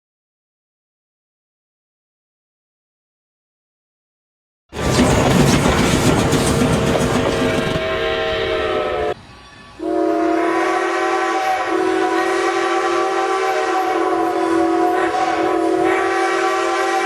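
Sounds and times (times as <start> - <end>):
steam locomotive whistle: 6.0 - 17.0.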